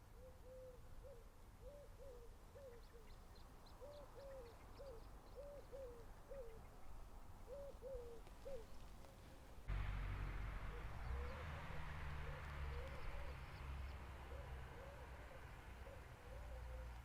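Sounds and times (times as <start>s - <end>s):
dove cooing: 0.2s - 3.2s, 3.8s - 6.6s, 7.5s - 8.8s, 10.7s - 17.0s.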